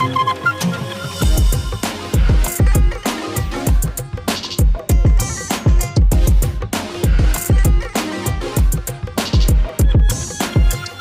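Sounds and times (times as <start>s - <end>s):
deep kick drums: 1.2s - 3.0s, 4.6s - 7.9s.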